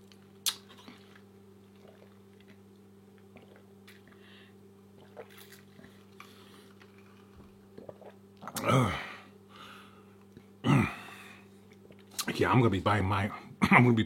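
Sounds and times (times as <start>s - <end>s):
steady low hum: 0.0s - 14.0s
faint chewing: 5.0s - 8.7s.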